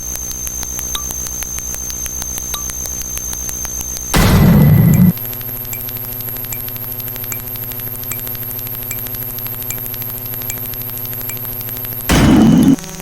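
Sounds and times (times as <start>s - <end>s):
buzzing drone with clicking: 0.0s - 13.0s
burst of noise: 4.2s - 5.2s, 12.1s - 13.0s
faint high blips: 4.2s - 5.9s.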